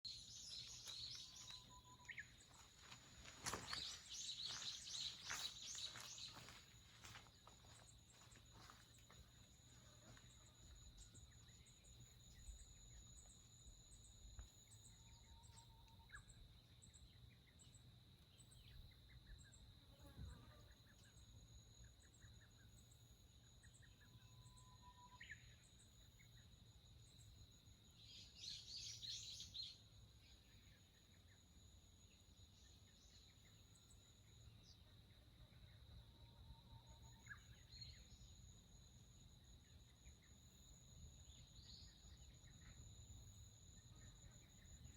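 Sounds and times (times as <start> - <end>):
bird calls and chatter: 0.0 - 9.2
high-pitched insect trill: 0.0 - 17.1, 18.5 - 44.9.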